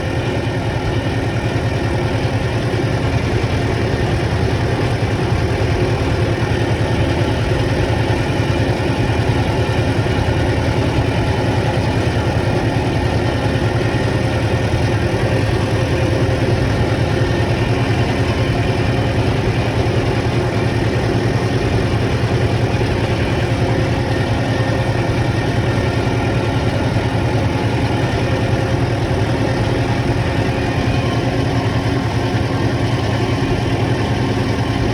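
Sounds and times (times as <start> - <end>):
heavy machine engine running: 0.0 - 34.9.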